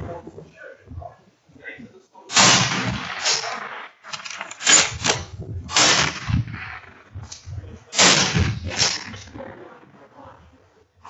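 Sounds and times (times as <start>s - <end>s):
gunshots: 2.3s - 10.2s.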